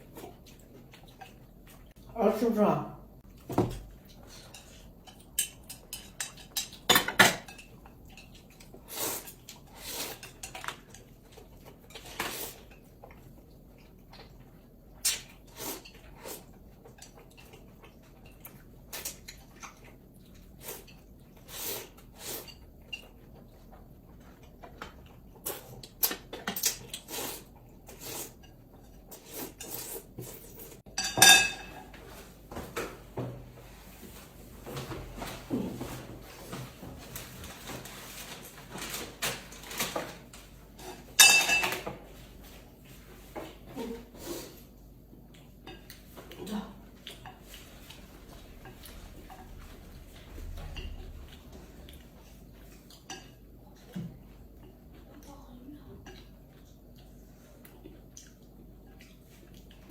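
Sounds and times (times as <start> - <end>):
utensils clinking on plates: 30.9 - 32.7, 40.8 - 42.0.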